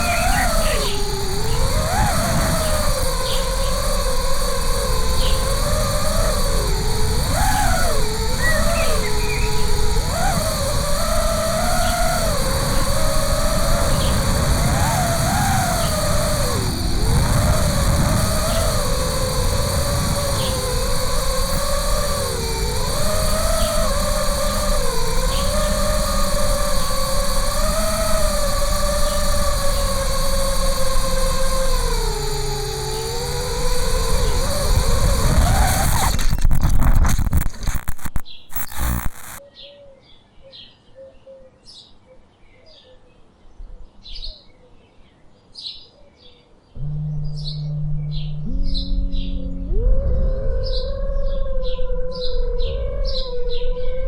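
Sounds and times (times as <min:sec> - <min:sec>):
drone motors whining: 0:00.0 - 0:39.4, 0:46.8 - 0:54.0
loud low hum: 0:00.0 - 0:39.4, 0:46.8 - 0:54.0
small birds chirping: 0:00.0 - 0:39.4
steady low rumble: 0:46.8 - 0:54.0.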